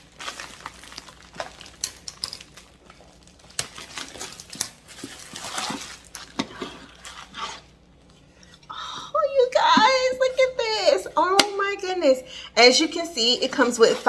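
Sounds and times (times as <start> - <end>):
packaging crinkling: 0.0 - 8.3.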